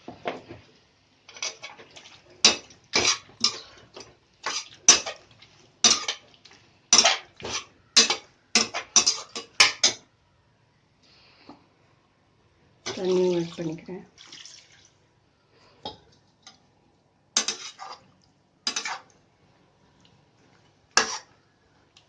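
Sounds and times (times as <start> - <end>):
metal spoon scraping a pot: 2.4 - 5.2, 5.8 - 6.3, 6.9 - 10.0, 17.4 - 18.1, 18.7 - 19.1, 21.0 - 21.4.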